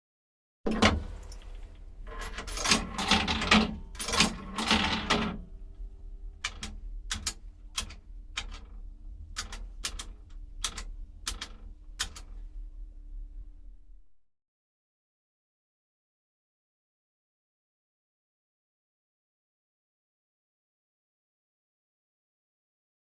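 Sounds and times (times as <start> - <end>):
faint low hum: 0.7 - 14.2
coins rattling in payphone: 2.1 - 5.4.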